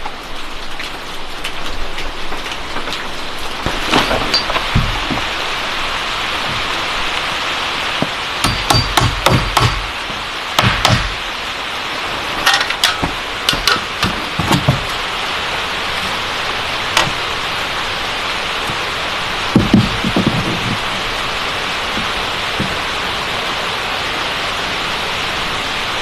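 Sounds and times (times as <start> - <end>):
rain hissing: 0.0 - 26.0
hammer blows: 8.4 - 11.2.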